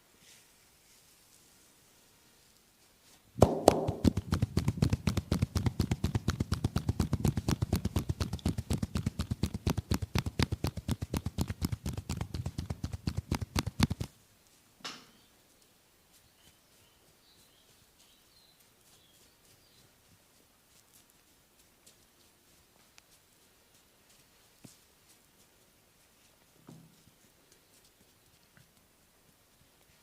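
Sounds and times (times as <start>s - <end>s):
hands striking body in massage: 3.4s - 14.1s.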